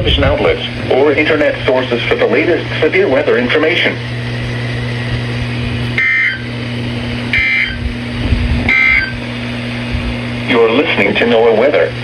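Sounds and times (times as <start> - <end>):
steady low hum: 0.0 - 12.0
digital data tone bursts: 6.0 - 6.5, 7.3 - 7.9, 8.7 - 9.2.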